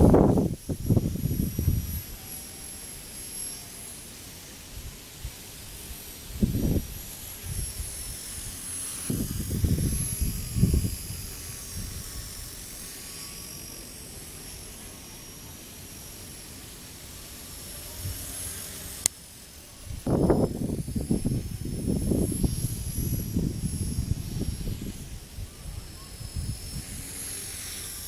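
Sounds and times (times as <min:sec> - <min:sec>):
wind rumbling on microphone: 0:00.0 - 0:02.2, 0:04.8 - 0:12.7, 0:19.8 - 0:28.0
rc helicopter whine: 0:00.0 - 0:28.0.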